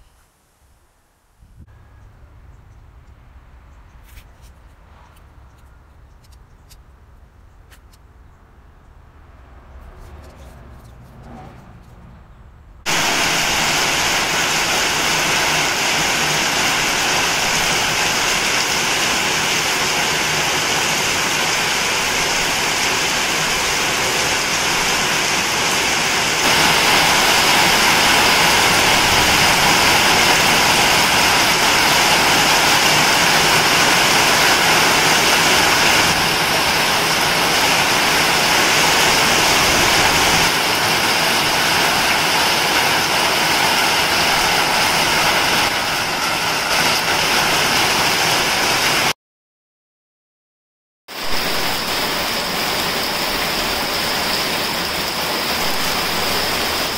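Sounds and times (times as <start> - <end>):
heavy rain pouring: 12.9 - 49.2, 51.1 - 56.9.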